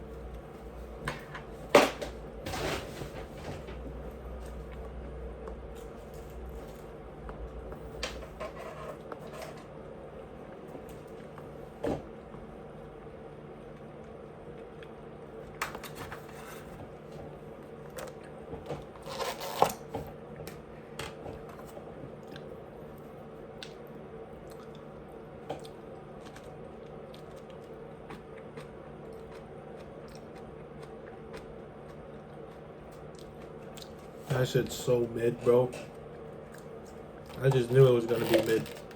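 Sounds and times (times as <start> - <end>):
background hum: 0.0 - 38.9
person chewing: 22.2 - 22.6, 24.4 - 25.0, 25.6 - 34.2.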